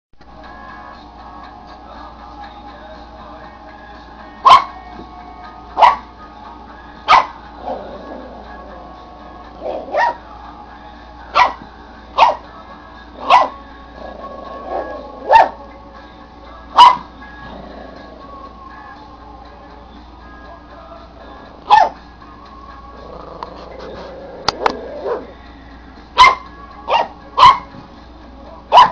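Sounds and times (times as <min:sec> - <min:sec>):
soft background music: 0:00.2 - 0:28.9
puppy barking in sharp yaps: 0:04.4 - 0:04.7, 0:26.2 - 0:27.7.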